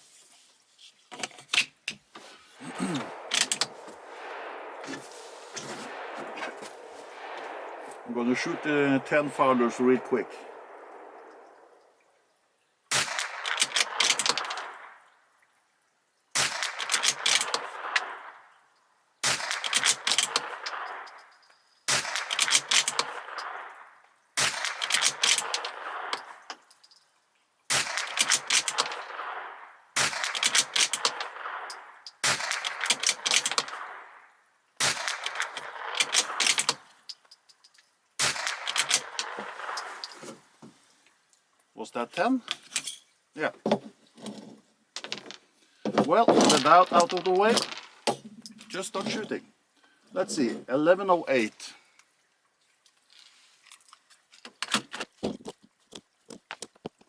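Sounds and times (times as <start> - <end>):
rifle shots: 2.6 - 12.0, 12.9 - 15.0, 16.4 - 18.5, 19.2 - 21.3, 21.9 - 26.4, 27.7 - 34.2, 34.8 - 37.0, 38.2 - 40.5
rifle bolt metallic clicks: 3.0 - 4.3, 19.4 - 21.1, 21.9 - 23.6, 30.2 - 31.5, 34.9 - 37.2, 38.3 - 40.4
rifle bolt clicking: 34.9 - 36.8.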